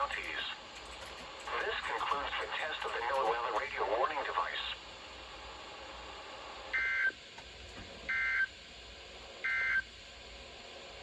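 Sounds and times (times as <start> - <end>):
radio hiss: 0.0 - 0.7, 1.4 - 5.3.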